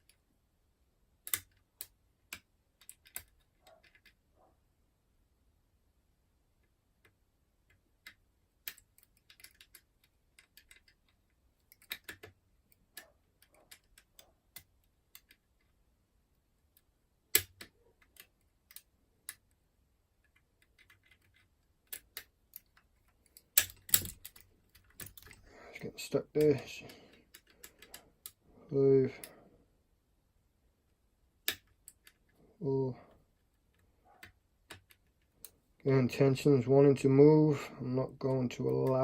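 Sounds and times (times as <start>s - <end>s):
lock picking metallic clicks: 1.2s - 4.2s, 6.6s - 15.8s, 16.7s - 19.6s, 20.2s - 25.5s, 26.2s - 28.4s, 31.4s - 32.4s.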